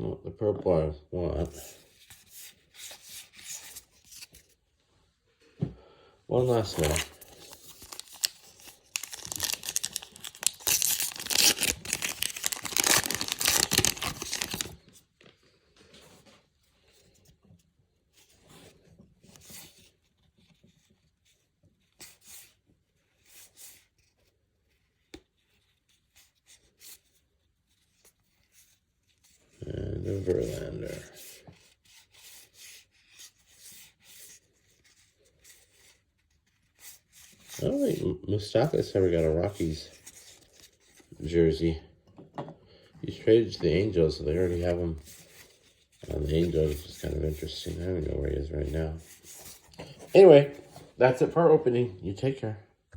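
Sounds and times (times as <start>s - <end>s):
card pack wrapper crinkling and tearing: 6.4s - 15.0s, 36.6s - 41.2s, 43.2s - 51.2s.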